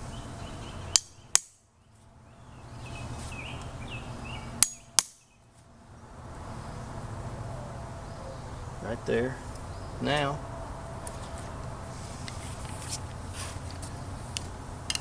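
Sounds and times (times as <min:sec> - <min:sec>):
sharp metallic taps: 0:04.6 - 0:05.3.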